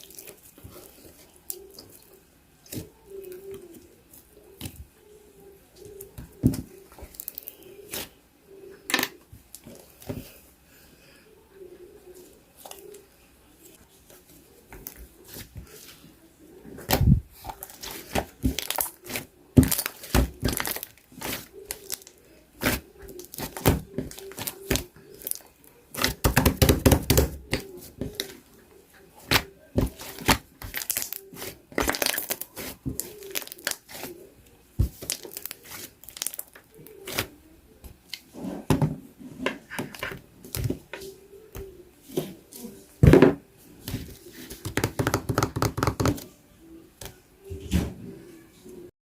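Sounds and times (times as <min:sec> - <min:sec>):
slime crackling and popping: 0:16.9 - 0:27.6, 0:29.2 - 0:34.1, 0:34.8 - 0:37.3.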